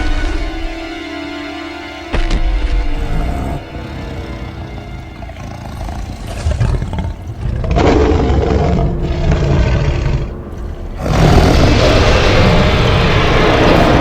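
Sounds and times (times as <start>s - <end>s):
film music: 0.0s - 14.0s
dinosaur roaring: 2.9s - 14.0s.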